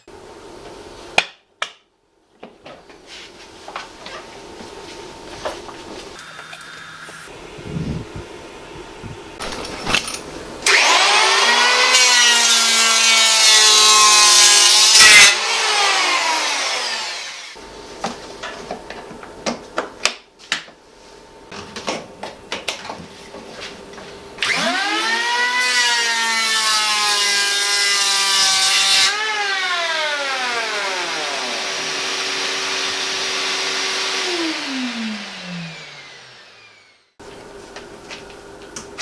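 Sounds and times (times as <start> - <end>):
electric motor whining: 29.1 - 37.1.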